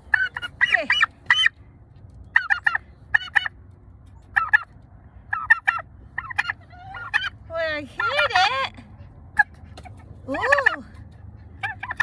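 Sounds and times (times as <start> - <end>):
turkey gobbling: 0.0 - 1.6, 2.3 - 3.6, 4.3 - 4.7, 5.3 - 7.4, 9.4 - 10.8, 11.6 - 12.0.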